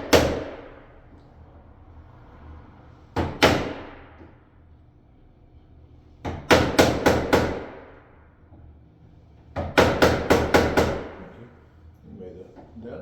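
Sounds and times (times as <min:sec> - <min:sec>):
hammer striking wood chisel: 0:00.0 - 0:00.7, 0:03.2 - 0:04.2, 0:06.2 - 0:07.9, 0:09.6 - 0:11.2.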